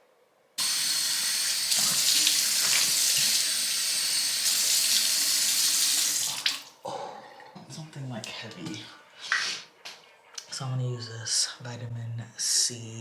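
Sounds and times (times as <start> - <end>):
water tap running into sink: 0.6 - 6.8.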